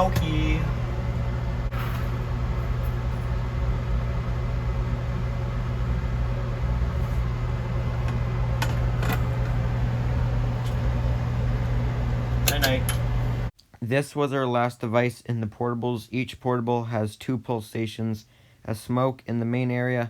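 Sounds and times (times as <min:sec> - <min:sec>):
low machine hum: 0:00.0 - 0:13.5.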